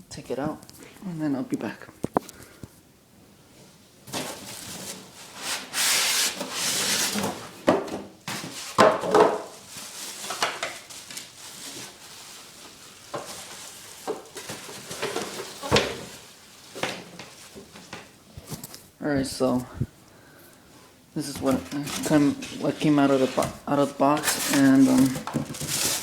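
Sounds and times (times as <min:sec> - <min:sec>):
cardboard packaging rustling: 0:04.0 - 0:19.7, 0:21.2 - 0:26.0.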